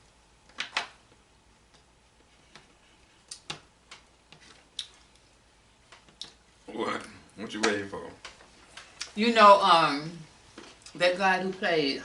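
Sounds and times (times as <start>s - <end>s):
clicks and smacks of eating: 2.5s - 5.2s, 5.9s - 6.4s.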